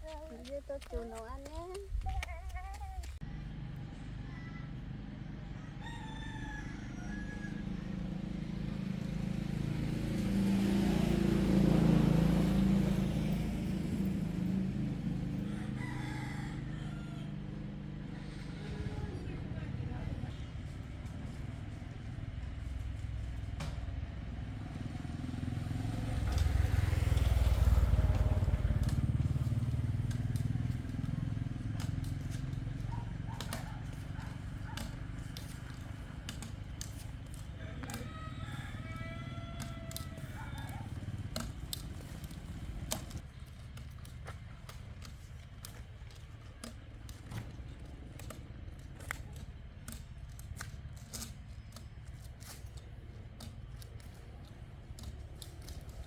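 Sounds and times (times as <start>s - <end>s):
rooster crowing: 4.2s - 8.3s, 15.1s - 18.8s, 36.9s - 41.0s.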